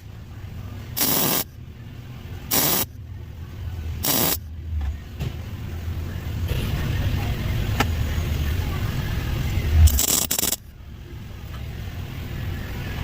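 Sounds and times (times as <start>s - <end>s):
low steady hum: 0.0s - 13.0s
welder firing bursts: 1.0s - 1.4s, 2.5s - 2.9s, 4.0s - 4.4s, 9.9s - 10.6s.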